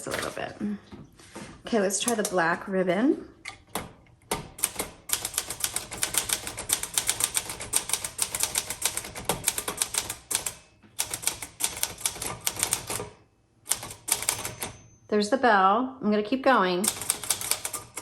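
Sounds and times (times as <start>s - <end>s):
typewriter keystrokes: 3.6s - 14.8s, 16.8s - 18.0s.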